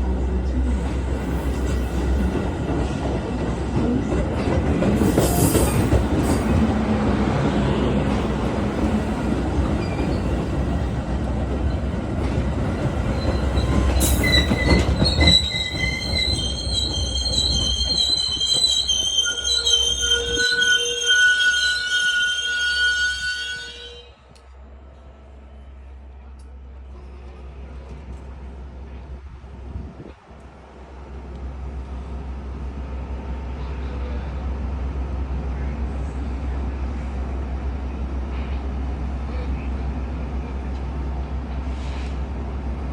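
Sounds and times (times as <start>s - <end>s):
train wheels rumbling on rails: 0.0s - 22.9s
train wheels squealing: 5.0s - 6.6s, 9.6s - 10.8s, 12.9s - 24.1s.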